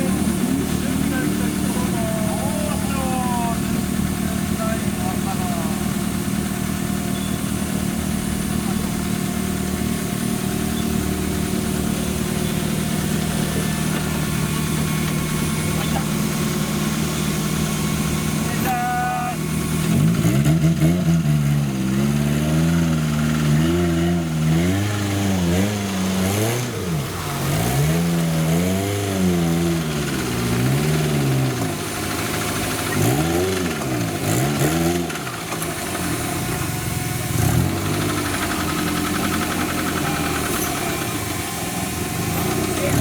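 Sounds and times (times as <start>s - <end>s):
engine revving: 0.0s - 43.0s.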